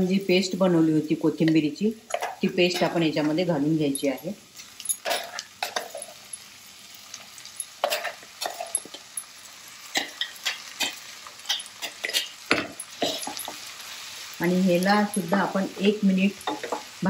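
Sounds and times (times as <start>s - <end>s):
spoon stirring and scraping: 2.0s - 3.0s, 4.0s - 6.5s, 7.1s - 9.3s, 9.9s - 14.1s, 16.3s - 17.0s
paste sizzling in oil: 2.0s - 17.0s.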